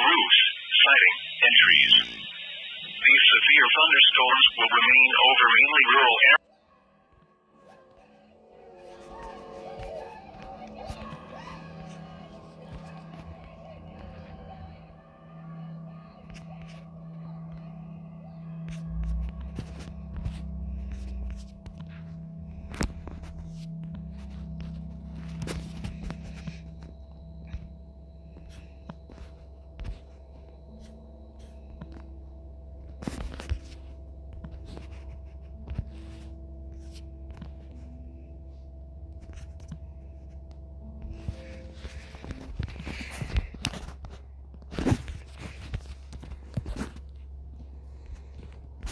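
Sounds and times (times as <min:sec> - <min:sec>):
low radio hum: 0:00.0 - 0:06.4, 0:08.0 - 0:48.9
crackling clicks and scrapes: 0:39.2 - 0:48.9.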